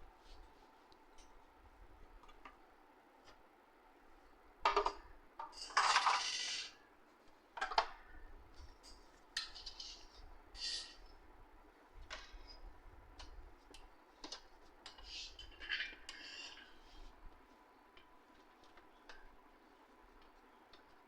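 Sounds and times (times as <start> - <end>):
hard objects clattering: 4.7 - 6.8.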